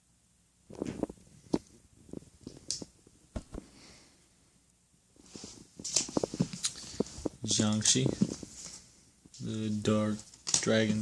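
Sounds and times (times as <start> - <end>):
breathy rustle: 5.2 - 7.4.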